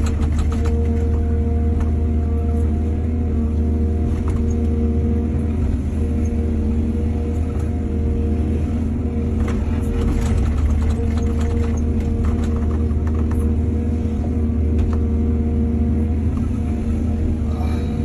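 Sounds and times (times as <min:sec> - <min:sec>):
metal clanks and rattles: 0:00.0 - 0:01.3, 0:09.4 - 0:13.5
diesel excavator engine running: 0:00.0 - 0:18.0.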